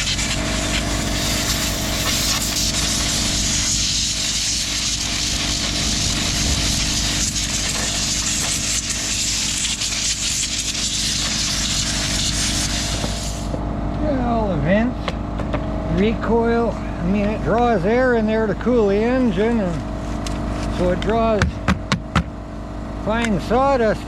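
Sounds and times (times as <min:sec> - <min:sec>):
compressed air hissing: 0:00.0 - 0:13.6
air compressor humming: 0:00.0 - 0:24.0.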